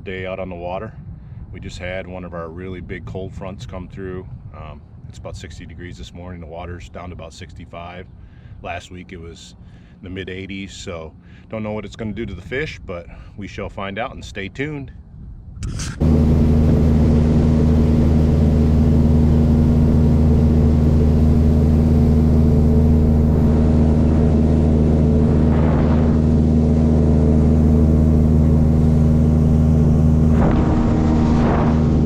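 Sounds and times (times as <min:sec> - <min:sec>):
outboard motor running: 0:15.6 - 0:32.0.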